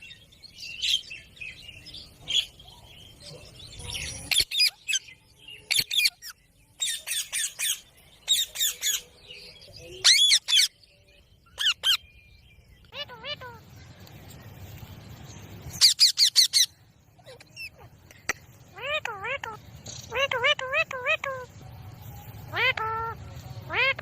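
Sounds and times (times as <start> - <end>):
parrots squawking: 5.7 - 9.1, 10.0 - 10.7, 11.6 - 12.0, 12.9 - 13.6, 15.8 - 21.5, 22.5 - 24.0.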